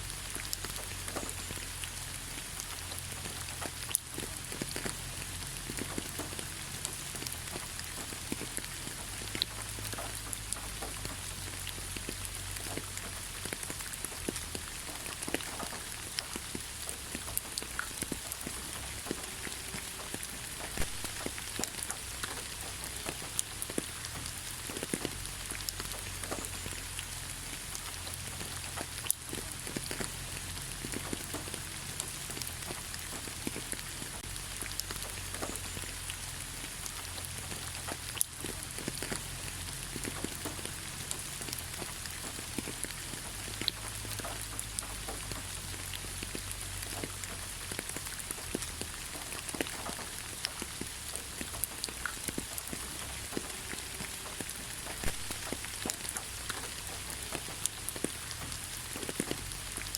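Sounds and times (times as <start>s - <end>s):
light rain falling on leaves: 0.0s - 59.9s
water drips: 0.0s - 59.9s.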